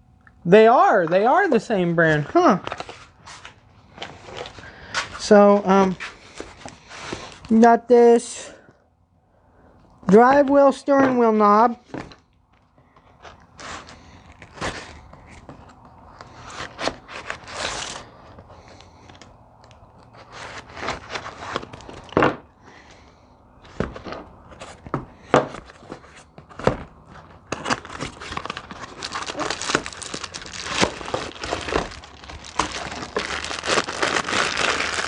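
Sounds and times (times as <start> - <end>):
packaging crinkling and tearing: 13.2 - 22.4, 23.7 - 35.0
packaging knocks and rustles: 20.0 - 22.5, 23.6 - 35.0.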